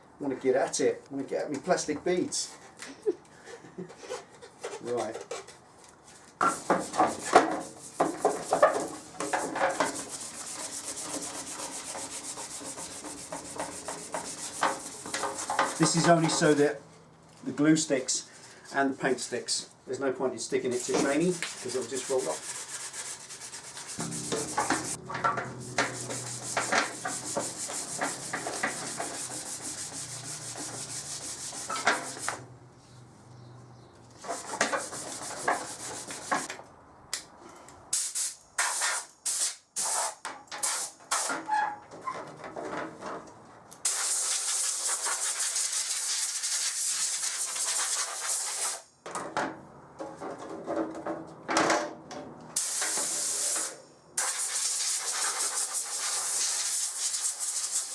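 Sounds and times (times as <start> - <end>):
hand sanding plastic: 6.4 - 16.6, 20.7 - 25.0, 25.6 - 32.4, 34.2 - 36.5, 43.9 - 48.8, 52.8 - 57.9
steady hiss: 20.7 - 32.4, 37.9 - 41.3, 43.9 - 48.9, 52.6 - 57.9.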